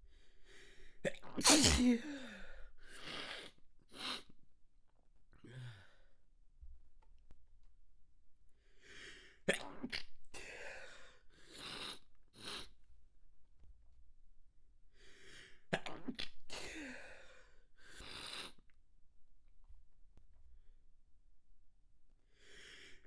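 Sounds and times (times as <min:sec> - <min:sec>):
person stifled sneezes: 0:01.4 - 0:02.3.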